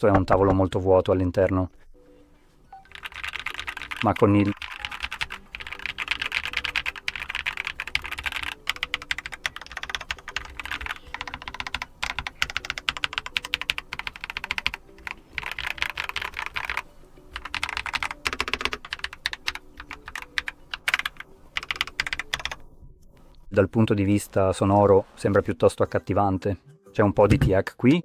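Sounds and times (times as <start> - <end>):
mechanical keyboard typing: 2.8 - 22.6.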